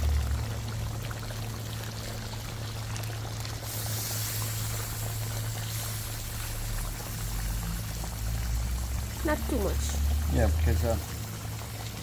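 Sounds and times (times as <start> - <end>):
water pouring into pot: 0.0 - 12.0.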